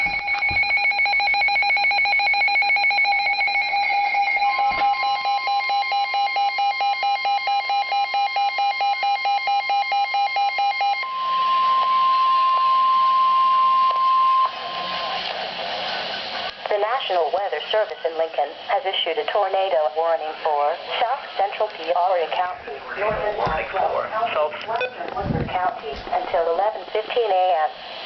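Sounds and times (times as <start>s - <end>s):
steady high alarm tone: 0.0s - 15.3s
rapid electronic alert beeps: 24.8s - 25.1s.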